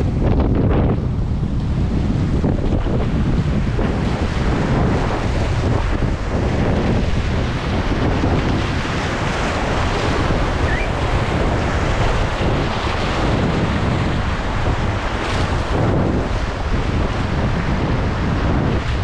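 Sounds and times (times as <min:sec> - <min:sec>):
wind buffeting microphone: 0:00.0 - 0:19.0
whitewater rapids rushing: 0:07.7 - 0:15.8.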